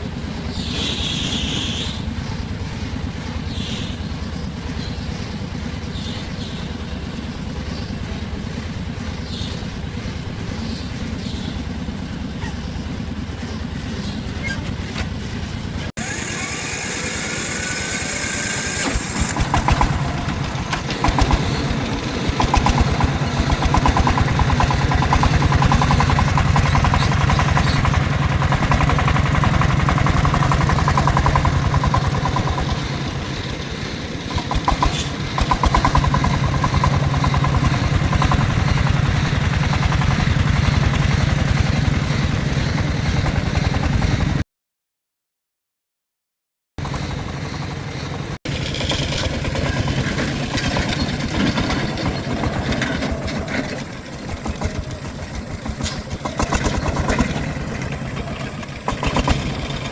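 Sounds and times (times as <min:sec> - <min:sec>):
engine rumbling: 0:00.0 - 0:44.4, 0:46.8 - 0:59.9
engine revving: 0:13.8 - 0:44.4, 0:46.8 - 0:59.9.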